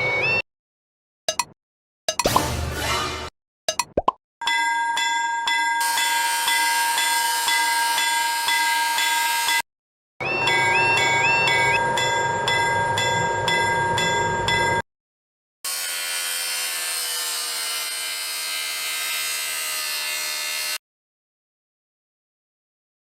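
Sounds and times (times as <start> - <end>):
level crossing bell ringing: 4.4 - 9.6, 10.2 - 14.8.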